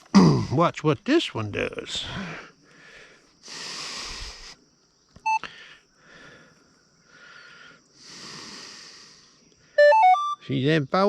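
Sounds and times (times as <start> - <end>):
breathy hiss on microphone: 2.8 - 4.7, 7.1 - 9.5
metal detector beep: 5.2 - 5.5, 9.8 - 10.6.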